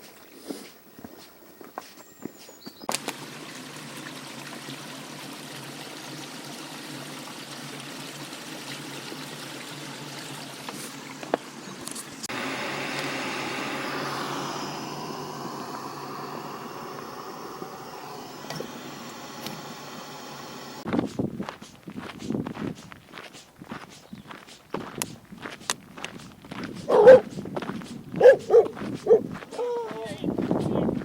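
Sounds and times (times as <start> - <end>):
stream water flowing: 2.9 - 20.9
click: 18.4 - 18.7, 19.4 - 19.6.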